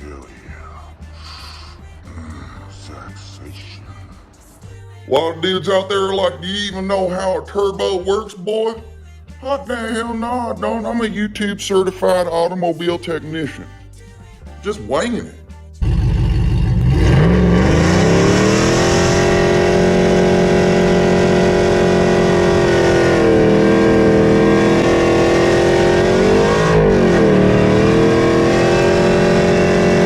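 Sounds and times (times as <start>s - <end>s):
turbo engine revving: 15.8s - 30.0s.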